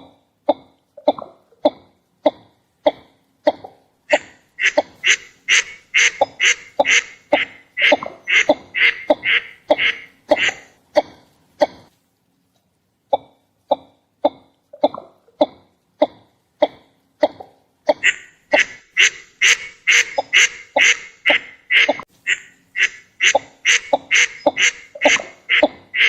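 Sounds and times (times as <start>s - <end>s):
duck calling in clipped notes: 4.1s - 10.7s, 18.0s - 26.0s.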